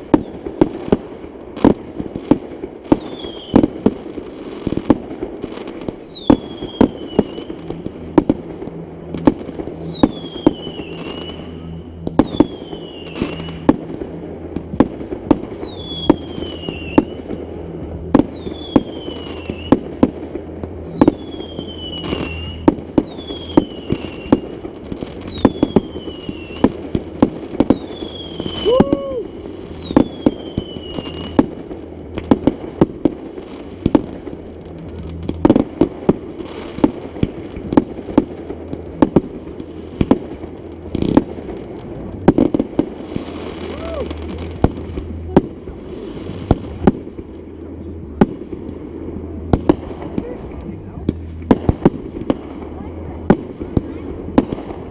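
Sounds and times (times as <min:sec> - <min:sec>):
fireworks bangs: 0:00.0 - 0:54.9
firework falling whistle: 0:02.9 - 0:03.9, 0:05.8 - 0:32.8, 0:40.8 - 0:47.1.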